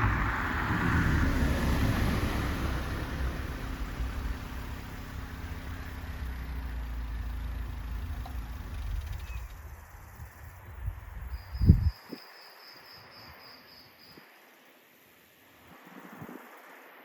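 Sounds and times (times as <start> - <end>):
vehicle engine humming: 0.0 - 11.3.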